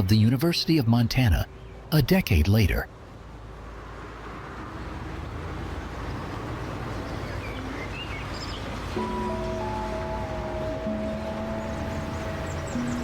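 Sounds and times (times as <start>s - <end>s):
outdoor background noise: 0.0s - 13.0s
held music notes: 9.0s - 13.0s.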